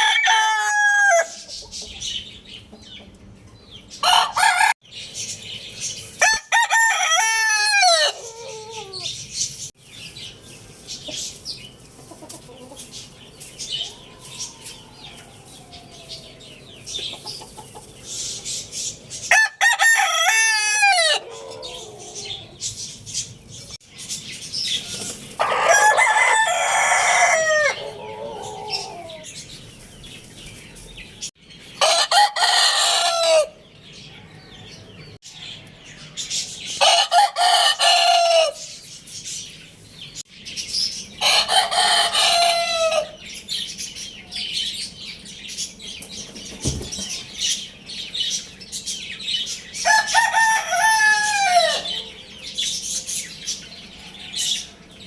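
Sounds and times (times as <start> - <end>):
roosters crowing: 0.0 - 2.2, 3.9 - 4.8, 6.1 - 9.2, 13.6 - 17.8, 19.2 - 22.8, 24.7 - 29.4, 31.8 - 38.8, 41.2 - 43.4, 49.8 - 55.0
chickens chirping and clucking: 0.0 - 55.0.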